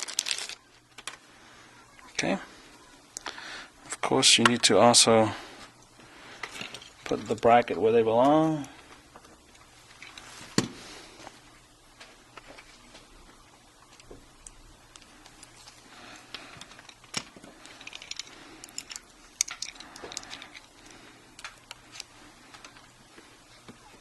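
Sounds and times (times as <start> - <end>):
small clicks and light scrapes: 13.9 - 22.9.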